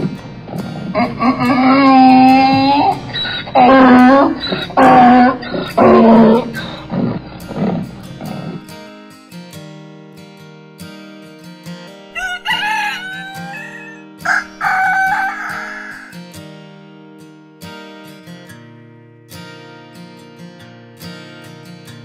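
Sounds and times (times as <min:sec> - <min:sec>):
plucked acoustic guitar music: 0:00.0 - 0:22.0
rooster crowing loudly: 0:12.2 - 0:16.2.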